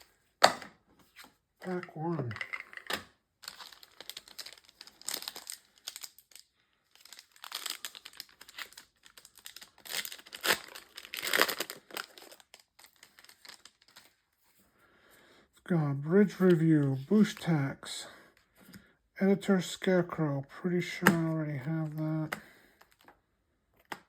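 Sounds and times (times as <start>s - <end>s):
wrapper tearing and crinkling: 3.4s - 14.2s.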